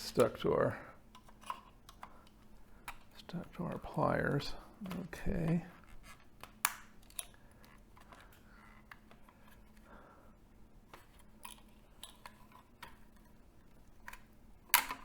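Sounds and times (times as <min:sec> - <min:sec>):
pliers and plastic parts clicking: 0:04.8 - 0:09.4, 0:10.9 - 0:13.3, 0:14.0 - 0:15.0.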